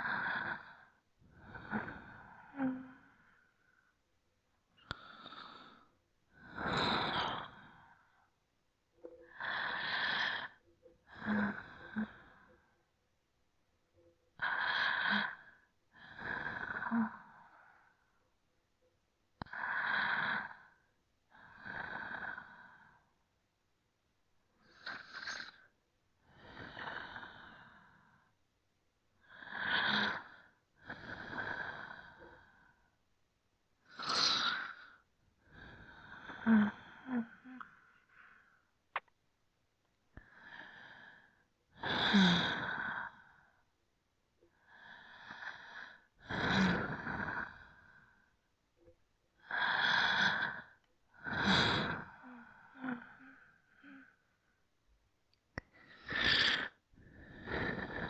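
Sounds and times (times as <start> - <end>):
deep human breathing: 55.6 - 58.0.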